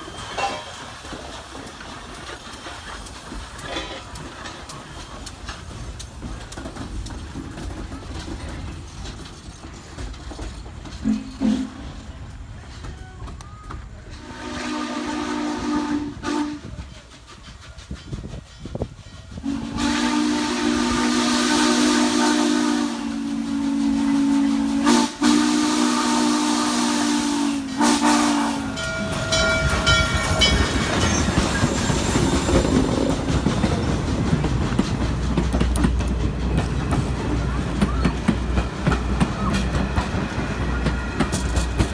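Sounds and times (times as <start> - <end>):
train wheels clickety-clack: 0.0 - 41.9
steam locomotive whistle: 11.0 - 11.9, 14.2 - 16.9, 19.4 - 33.3.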